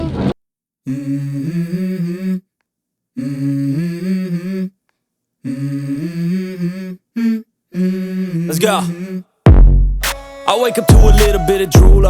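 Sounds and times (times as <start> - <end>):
person humming a melody: 0.9 - 2.5, 3.2 - 4.8, 5.4 - 9.3, 10.5 - 12.0.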